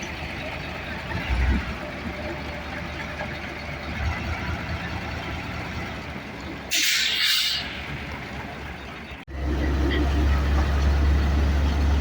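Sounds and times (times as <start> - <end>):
heavy vehicle engine running: 0.0 - 12.0.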